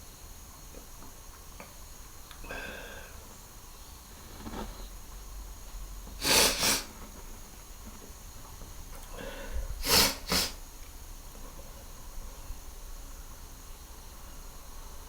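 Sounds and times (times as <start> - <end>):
short inhale: 2.4 - 3.3, 6.2 - 6.9, 9.1 - 10.6
man sneezing: 9.8 - 10.6.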